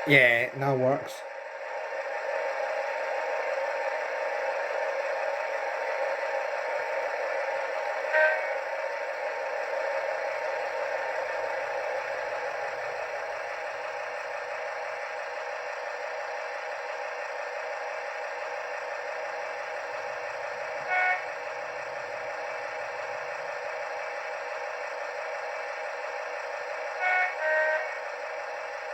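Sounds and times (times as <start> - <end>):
diesel engine running: 0.0 - 28.9
locomotive horn toot: 8.1 - 8.7, 20.8 - 21.4, 27.0 - 28.1.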